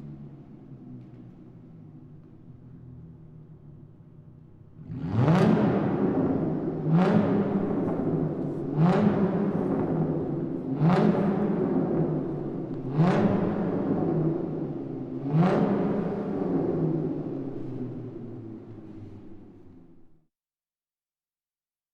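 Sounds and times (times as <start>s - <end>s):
car engine revving: 4.7s - 20.1s.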